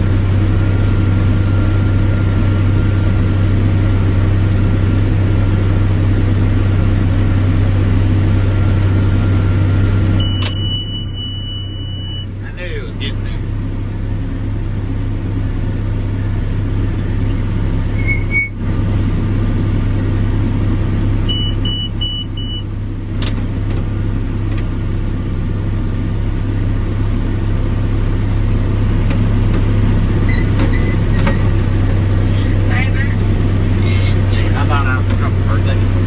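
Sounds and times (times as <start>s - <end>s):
tractor running under load: 0.0s - 36.0s.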